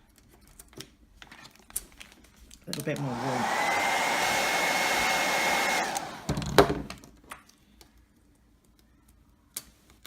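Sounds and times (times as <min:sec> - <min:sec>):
hairdryer blowing: 0:02.8 - 0:06.6.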